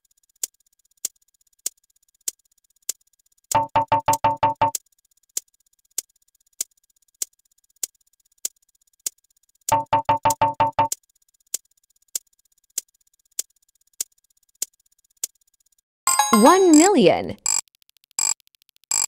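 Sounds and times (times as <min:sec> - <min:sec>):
clock-like electronic ticking: 0:03.6 - 0:04.7, 0:09.7 - 0:10.9, 0:16.1 - 0:19.0.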